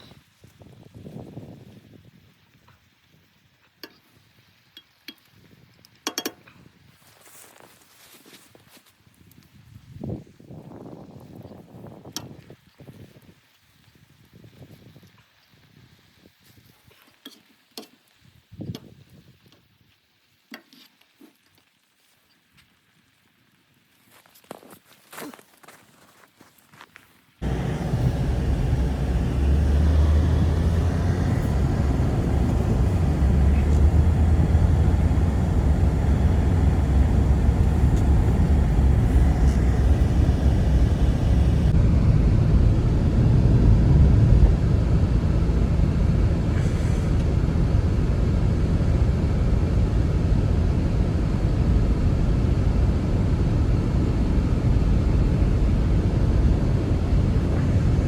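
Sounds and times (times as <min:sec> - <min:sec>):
blizzard wind blowing hard: 0:27.4 - 0:58.0.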